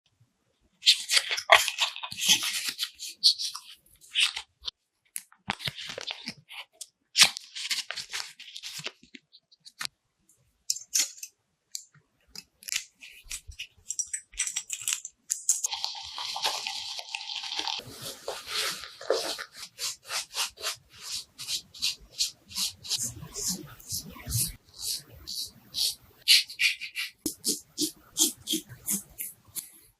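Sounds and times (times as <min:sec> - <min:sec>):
razor scraping stubble: 0:15.7 - 0:29.7.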